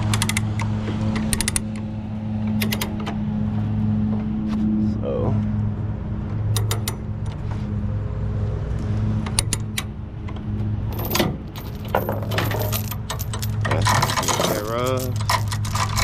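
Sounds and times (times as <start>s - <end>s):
low engine hum: 0.0s - 16.0s
metal chain clinking and rattling: 10.9s - 16.0s.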